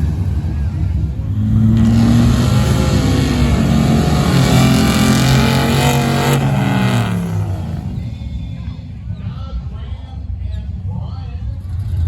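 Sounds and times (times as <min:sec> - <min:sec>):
truck engine at full throttle: 0:00.0 - 0:09.1.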